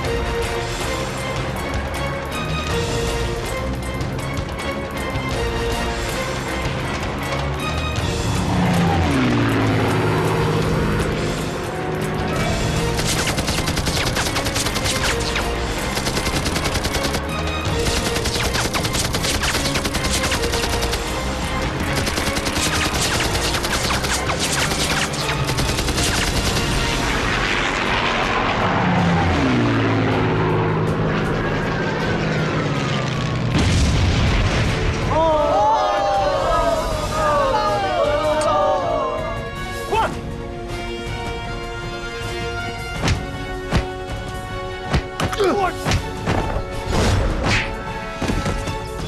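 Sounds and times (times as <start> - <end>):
film music score: 0.0 - 49.0
rapid gunfire: 12.8 - 27.1.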